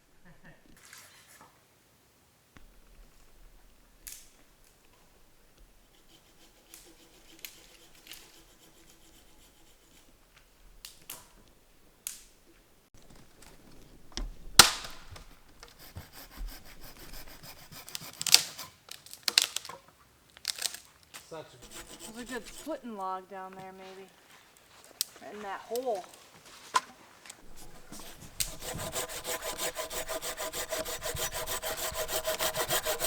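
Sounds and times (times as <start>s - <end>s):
rustling: 12.4s - 19.8s, 20.4s - 33.0s.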